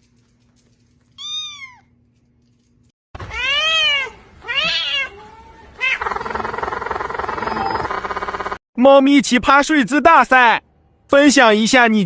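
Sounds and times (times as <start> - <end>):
cats meowing: 1.2 - 1.9, 3.2 - 6.0.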